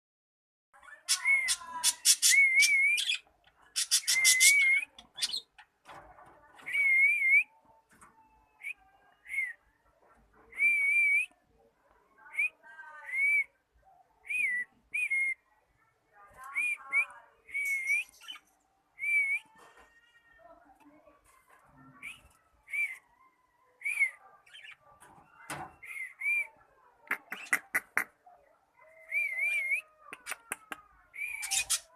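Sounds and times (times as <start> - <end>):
raspy bird chatter: 1.0 - 5.8, 27.0 - 28.2, 31.2 - 31.9.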